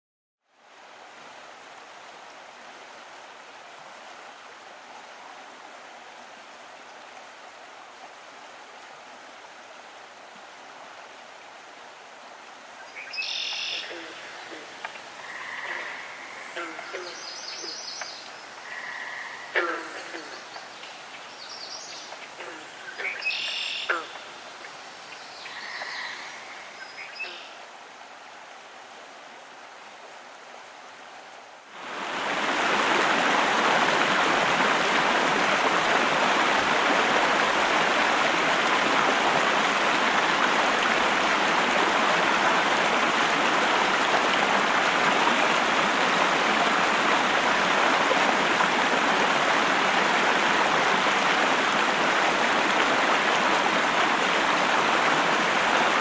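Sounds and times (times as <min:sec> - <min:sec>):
waterfall rushing: 0:12.9 - 0:27.4, 0:31.7 - 0:56.0.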